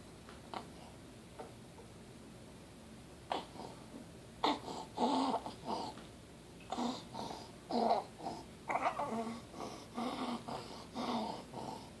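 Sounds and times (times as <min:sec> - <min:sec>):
infant breathing with stridor: 0:04.4 - 0:06.0, 0:06.7 - 0:12.0.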